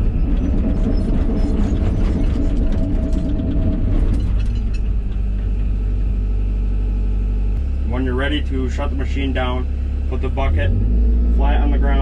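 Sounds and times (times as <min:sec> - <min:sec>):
excavator tracks clattering: 0:00.0 - 0:06.2
excavator diesel engine: 0:00.0 - 0:12.0.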